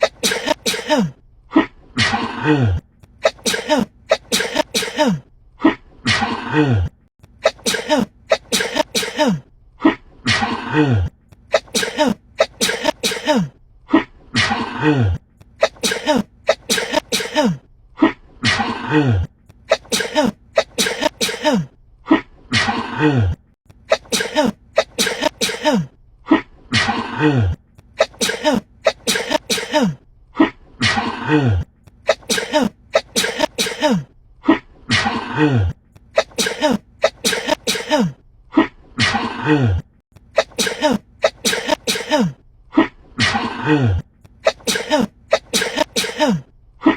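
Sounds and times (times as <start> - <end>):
woman sneezing: 0.0 - 1.2, 3.2 - 5.2, 7.4 - 9.4, 11.5 - 13.5, 15.6 - 17.6, 19.7 - 21.7, 23.9 - 25.9, 28.0 - 30.0, 32.1 - 34.1, 36.2 - 38.2, 40.4 - 42.4, 44.4 - 46.5.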